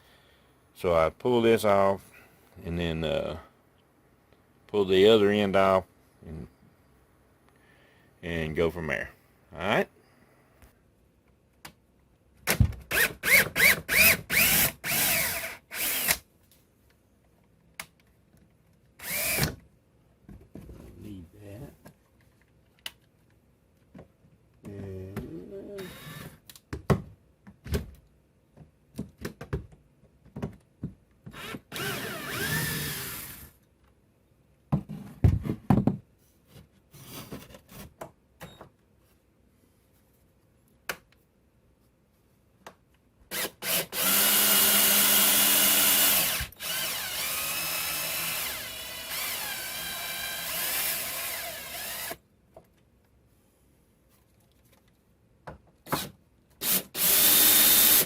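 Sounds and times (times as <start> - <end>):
power drill driving screws: 12.9 - 16.2, 19.0 - 19.6, 25.8 - 26.4, 31.3 - 33.6, 43.3 - 52.2, 55.9 - 58.0.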